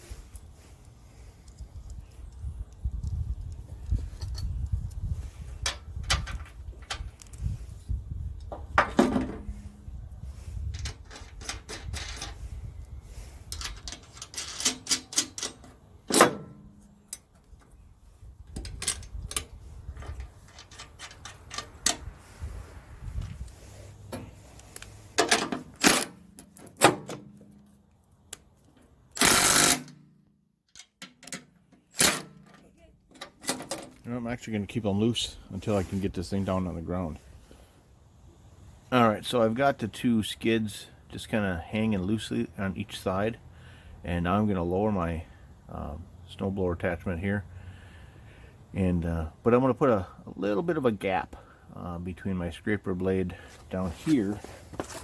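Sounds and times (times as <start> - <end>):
metal clanks and knocks: 13.5 - 17.2.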